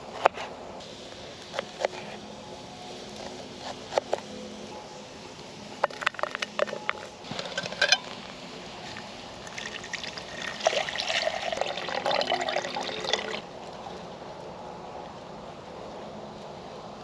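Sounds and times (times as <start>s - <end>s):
water pouring: 9.4s - 13.4s.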